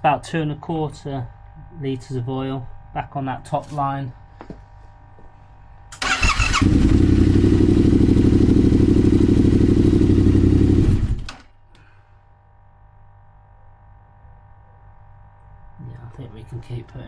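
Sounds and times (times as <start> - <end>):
motorcycle engine starting and idling: 5.9 - 11.5.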